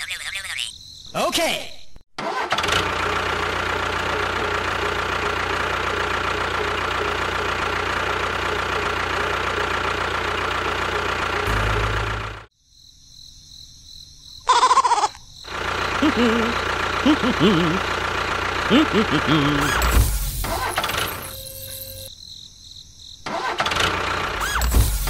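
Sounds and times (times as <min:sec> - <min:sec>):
small engine running: 0:02.2 - 0:12.5, 0:15.5 - 0:22.1, 0:23.3 - 0:25.0.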